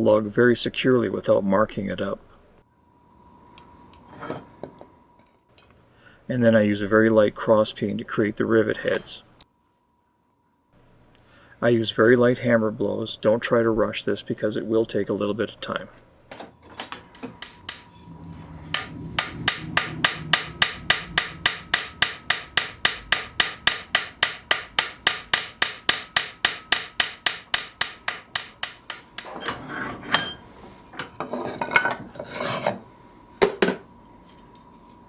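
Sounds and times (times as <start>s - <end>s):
scraping and handling noise: 16.3s - 19.0s, 29.0s - 32.8s
hammer blows on iron: 17.1s - 29.4s.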